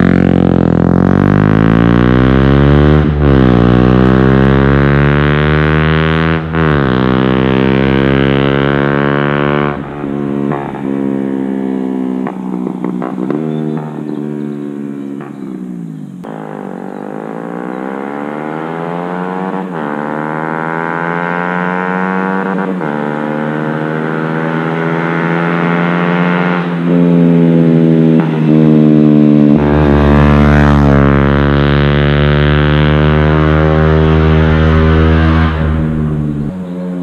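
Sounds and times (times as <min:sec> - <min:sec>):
motorcycle engine accelerating: 0:00.0 - 0:37.0
deep low rumble: 0:08.8 - 0:15.8, 0:34.5 - 0:37.0.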